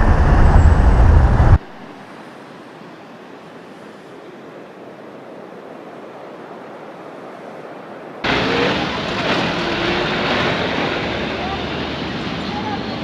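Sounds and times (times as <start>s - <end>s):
street noise: 0.0s - 13.0s
city traffic: 6.1s - 13.0s.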